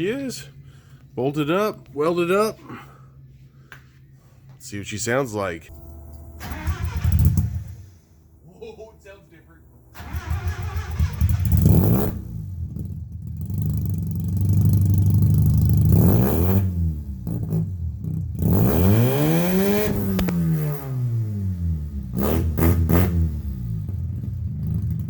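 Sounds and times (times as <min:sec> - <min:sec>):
car engine revving: 0:05.7 - 0:25.0.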